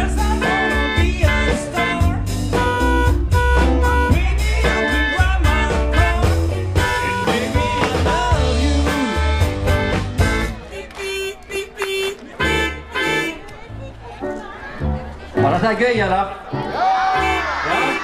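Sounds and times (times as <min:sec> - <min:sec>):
heavy bass line: 0:00.0 - 0:10.7, 0:11.6 - 0:13.4, 0:17.2 - 0:18.0
guitar: 0:00.0 - 0:18.0
car horns playing notes: 0:00.4 - 0:08.3, 0:08.9 - 0:13.5, 0:17.2 - 0:18.0.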